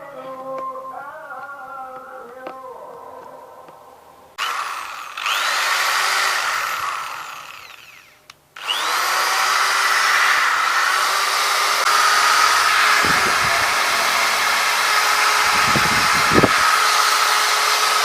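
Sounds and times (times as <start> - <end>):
electric drill whining: 4.4 - 18.0.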